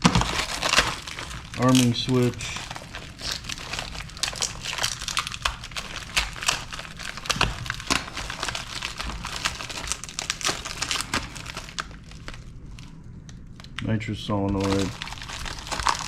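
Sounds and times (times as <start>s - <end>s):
packaging crinkling: 0.0s - 16.0s.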